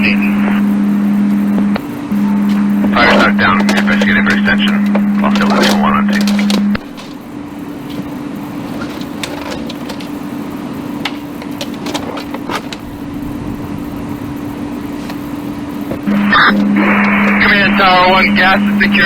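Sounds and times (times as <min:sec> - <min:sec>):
fire engine idling: 0:00.0 - 0:19.0
sharp cracks and knocks: 0:11.0 - 0:12.9.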